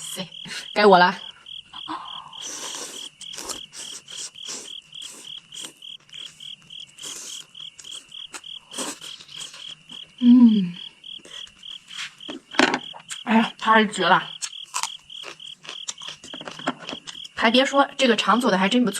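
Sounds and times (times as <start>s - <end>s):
cricket chirping: 0.0s - 18.9s
person chewing: 2.3s - 10.2s, 11.1s - 13.3s, 14.3s - 17.4s
person humming mm: 10.2s - 10.8s.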